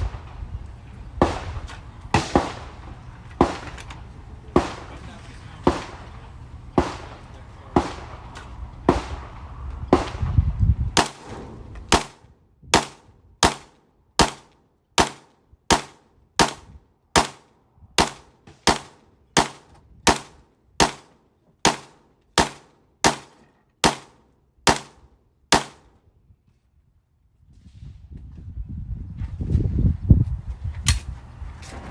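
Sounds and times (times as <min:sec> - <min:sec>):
pistol shots: 0:11.0 - 0:12.2, 0:12.8 - 0:25.9.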